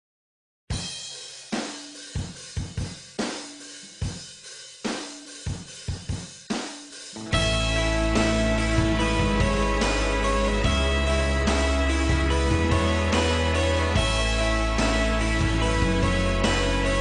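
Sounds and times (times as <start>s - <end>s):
drum kit slow beat: 0.7s - 17.0s
band with guitar: 7.2s - 17.0s.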